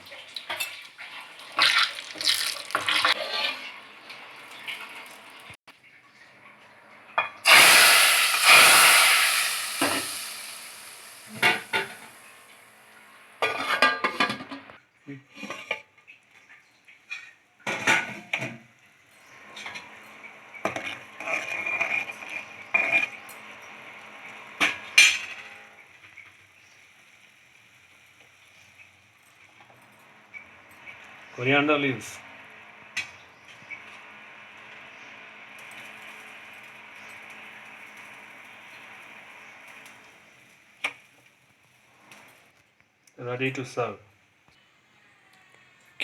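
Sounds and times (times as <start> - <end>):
spices sizzling in hot oil: 0.0 - 5.6, 7.4 - 12.8, 20.2 - 31.5, 32.5 - 42.2
metal spoon scraping a pan: 1.6 - 3.8, 20.7 - 23.3.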